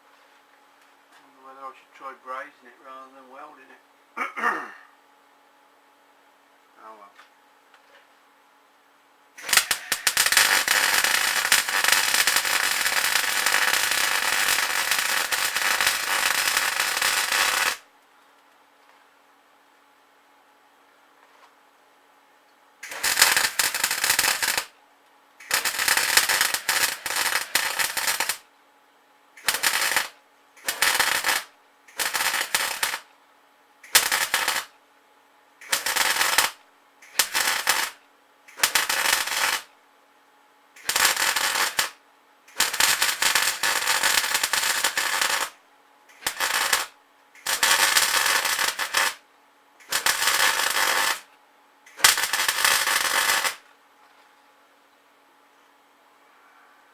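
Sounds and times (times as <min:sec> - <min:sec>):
arc welder crackling: 0:09.4 - 0:18.0, 0:22.8 - 0:24.8, 0:25.4 - 0:28.5, 0:29.4 - 0:33.1, 0:33.8 - 0:34.8, 0:35.6 - 0:39.7, 0:40.7 - 0:49.2, 0:49.8 - 0:53.7.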